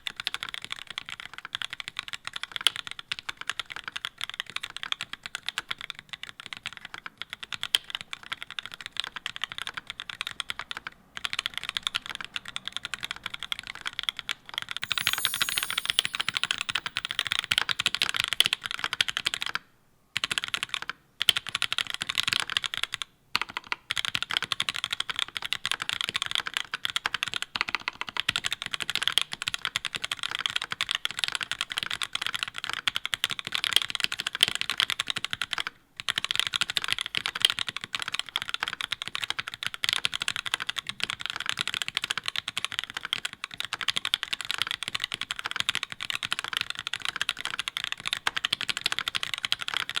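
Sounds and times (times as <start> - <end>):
mechanical keyboard typing: 0.4 - 17.7, 30.3 - 50.0.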